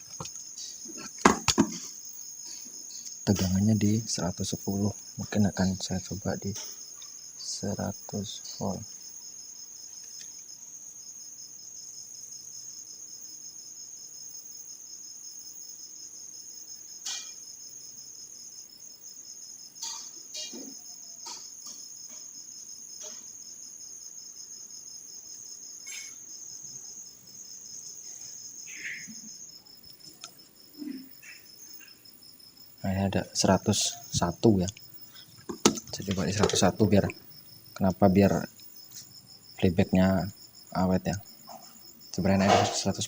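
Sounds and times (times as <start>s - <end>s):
cricket trilling: 0.0s - 43.0s
light clicks and knocks: 34.6s - 37.2s.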